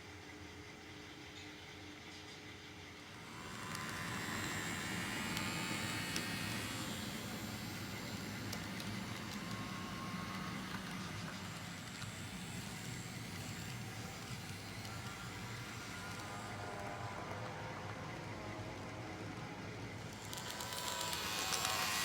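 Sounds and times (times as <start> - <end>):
model train rumbling on track: 0.7 - 22.0.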